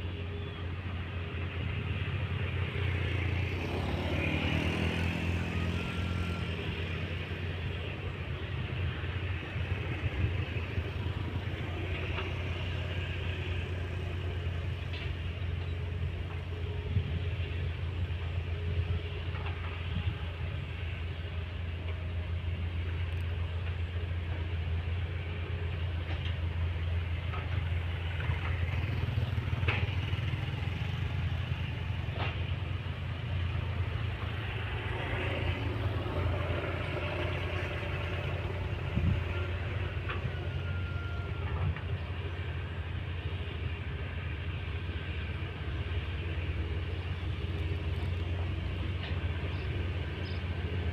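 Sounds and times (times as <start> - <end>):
diesel engines droning: 0.0 - 50.9.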